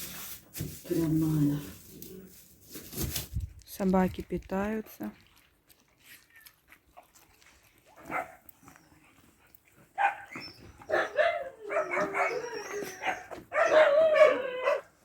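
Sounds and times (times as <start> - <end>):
dog barking and whining: 8.0 - 8.4, 10.0 - 15.0.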